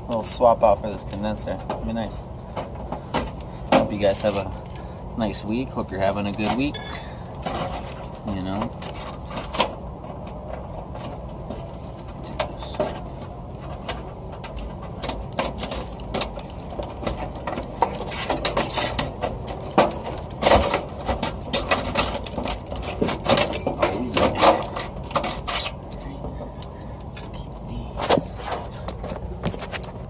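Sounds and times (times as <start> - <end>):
steady low hum: 0.0 - 30.0
clinking of tools and metal parts: 6.4 - 7.7, 23.1 - 25.6.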